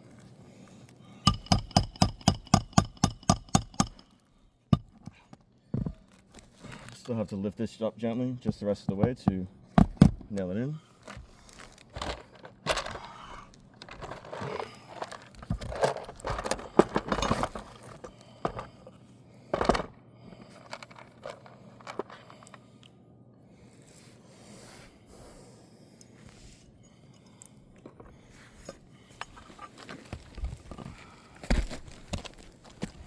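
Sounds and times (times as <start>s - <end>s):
handling noise: 11.0s - 18.9s, 19.5s - 22.5s.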